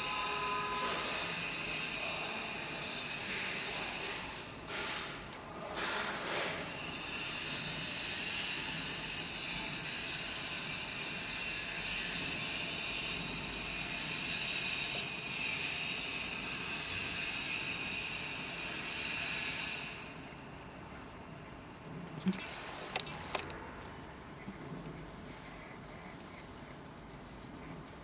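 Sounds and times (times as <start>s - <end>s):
milling machine high-pitched whine: 0.0s - 4.4s, 6.7s - 20.4s.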